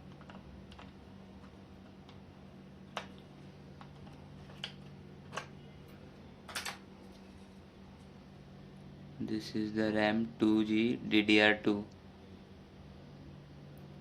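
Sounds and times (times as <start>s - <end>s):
low electrical hum: 0.0s - 14.0s
clicks of computer parts handled: 6.5s - 6.8s.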